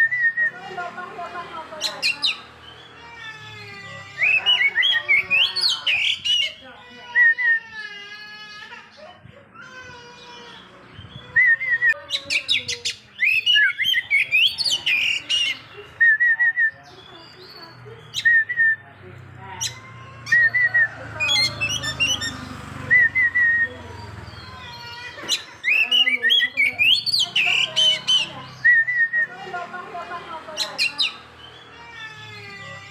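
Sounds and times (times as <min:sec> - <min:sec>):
bird chirp: 0:10.4 - 0:29.3
bird whistled song: 0:12.6 - 0:18.8, 0:21.7 - 0:24.4, 0:25.3 - 0:29.3.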